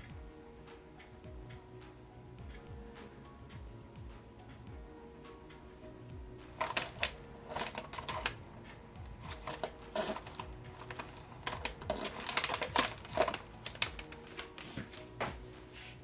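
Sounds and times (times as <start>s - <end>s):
keyboard keys clacking: 6.5s - 8.4s, 9.0s - 15.5s.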